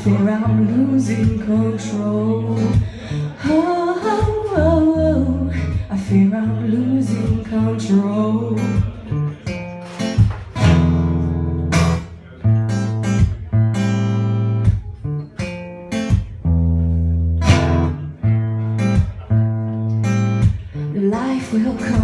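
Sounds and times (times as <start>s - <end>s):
acoustic guitar strumming chords: 0.0s - 22.0s.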